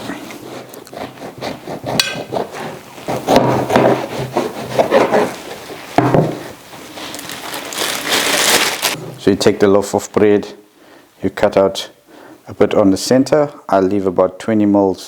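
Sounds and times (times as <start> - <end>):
knife sawing through bread: 0.0 - 5.8.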